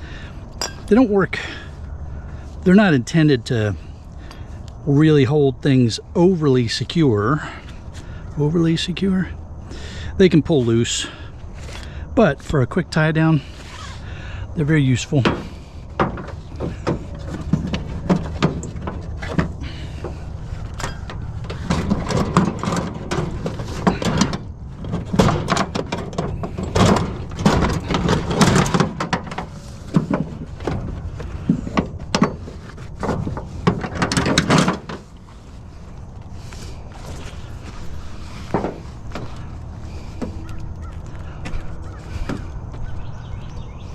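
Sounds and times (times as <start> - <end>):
steady low hum: 0.0 - 43.9
scrap items knocking and rattling: 15.1 - 35.7, 36.4 - 40.5.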